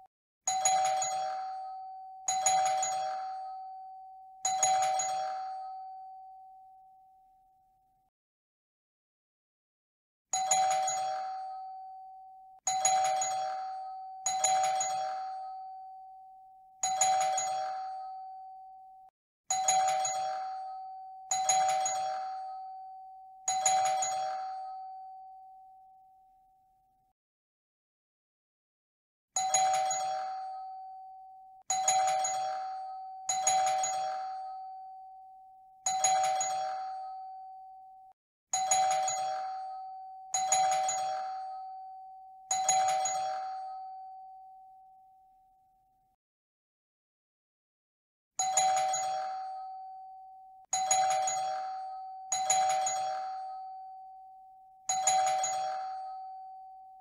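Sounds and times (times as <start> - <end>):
doorbell chime: 42.5 - 44.3, 48.4 - 49.9, 50.7 - 53.8, 54.9 - 56.7.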